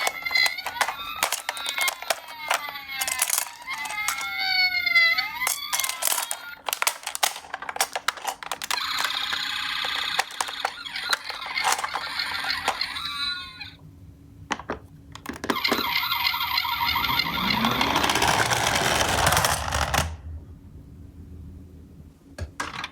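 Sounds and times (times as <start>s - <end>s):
toy cars clicking together: 0.0s - 13.2s, 17.0s - 20.2s
toy electronic sirens wailing: 0.0s - 13.8s, 15.5s - 19.5s.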